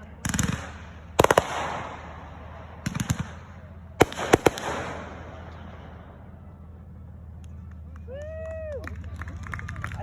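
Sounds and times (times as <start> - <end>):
fireworks bangs: 0.2 - 5.9.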